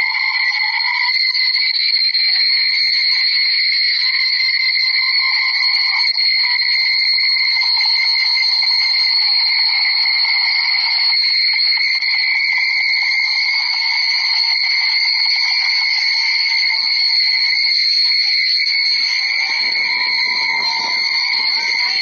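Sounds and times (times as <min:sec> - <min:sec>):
high-pitched drone: 0:18.7 - 0:22.0.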